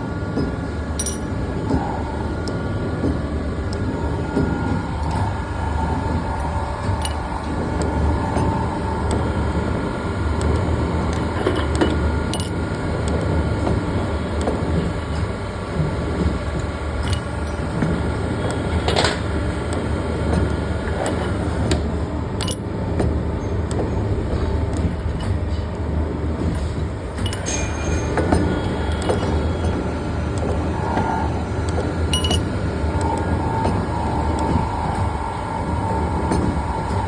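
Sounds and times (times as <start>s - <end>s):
machine motor and pump hum: 0.0s - 37.0s.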